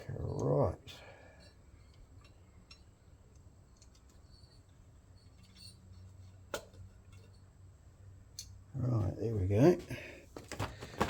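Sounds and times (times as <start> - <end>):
faint metal clicks and ticks: 0.3 - 4.8.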